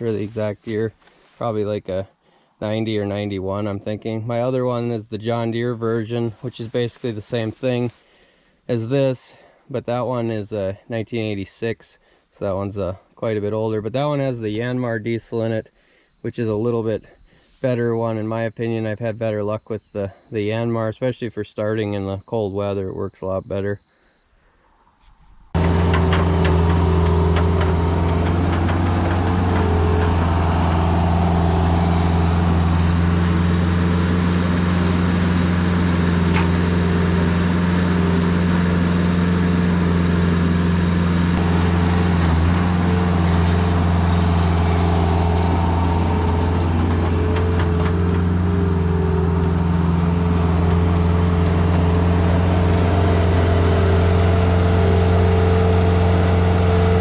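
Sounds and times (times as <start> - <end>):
diesel engine running: 0.0 - 2.0, 25.6 - 57.0.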